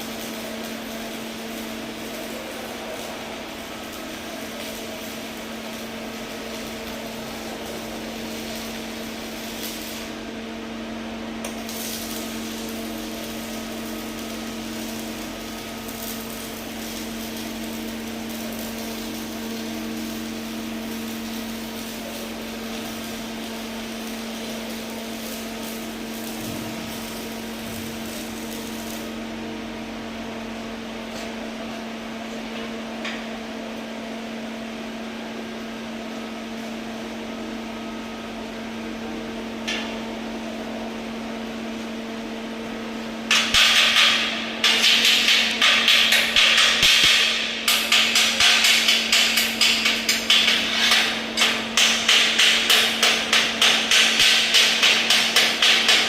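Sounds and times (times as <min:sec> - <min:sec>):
welding arc crackling: 0:00.0 - 0:30.6, 0:42.2 - 0:56.0
welding machine hum: 0:00.0 - 0:56.0.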